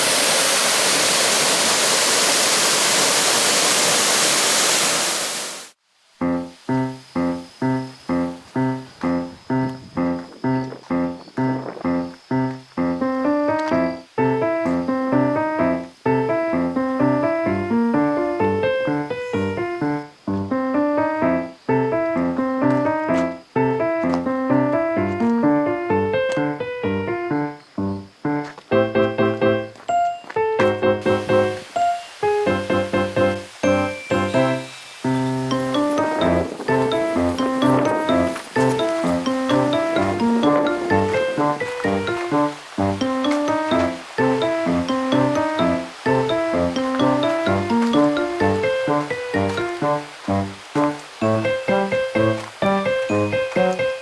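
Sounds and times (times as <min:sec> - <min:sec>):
waterfall roaring: 0:00.0 - 0:05.8, 0:30.7 - 0:54.0
keyboard melody: 0:06.2 - 0:54.0.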